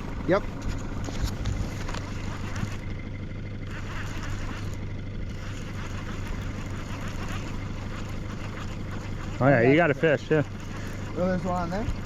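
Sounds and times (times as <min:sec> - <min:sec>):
boat motor humming: 0:00.0 - 0:12.0
wind and water noise: 0:03.6 - 0:12.0.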